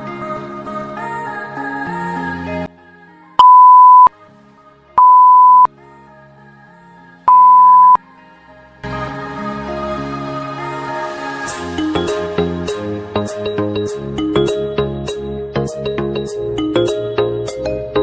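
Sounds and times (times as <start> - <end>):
loud electronic beeps: 3.4 - 4.1, 5.0 - 5.7, 7.3 - 8.0.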